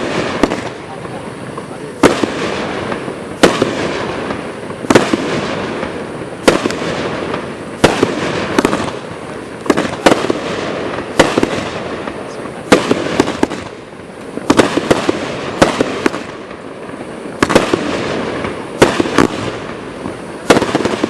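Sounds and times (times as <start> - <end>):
firework bangs: 0.0 - 21.0
firework hiss and crackle: 0.0 - 21.0.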